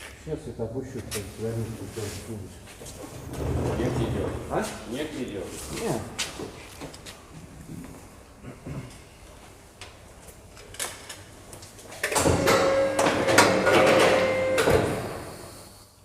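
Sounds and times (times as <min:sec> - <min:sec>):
machine whining with rattle: 0:12.0 - 0:15.4.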